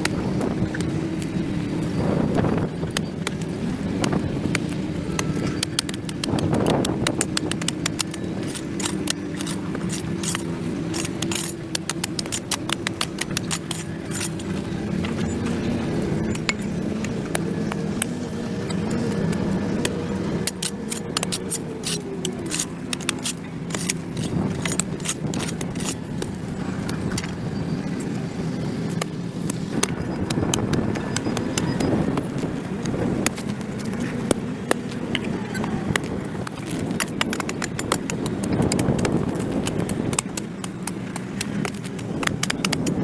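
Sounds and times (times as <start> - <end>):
low engine hum: 0.0 - 43.0
tool scraping concrete: 4.0 - 15.5, 20.4 - 26.4.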